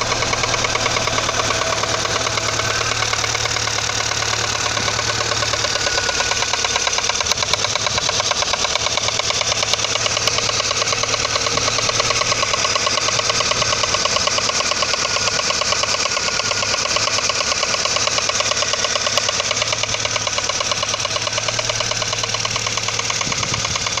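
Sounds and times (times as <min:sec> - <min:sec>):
car engine running with even knock: 0:00.0 - 0:24.0.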